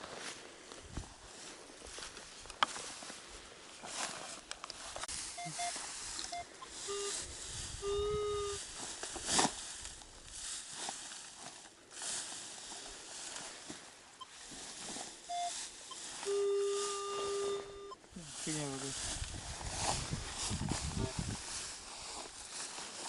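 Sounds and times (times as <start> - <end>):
footsteps through grass: 0.0 - 23.0
metal detector beeping: 5.3 - 8.6, 14.2 - 14.4, 15.2 - 18.1.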